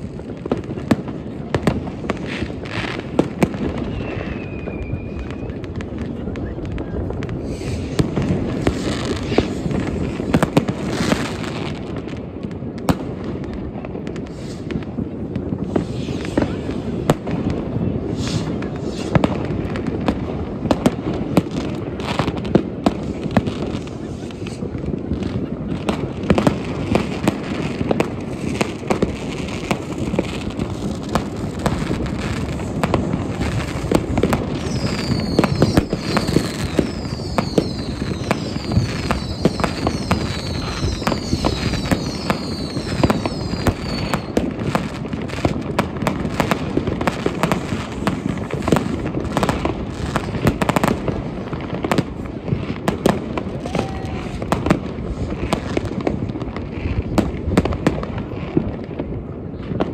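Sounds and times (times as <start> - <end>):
firecrackers crackling and banging: 0.0 - 59.9
whistling fireworks falling in pitch: 0.0 - 59.9.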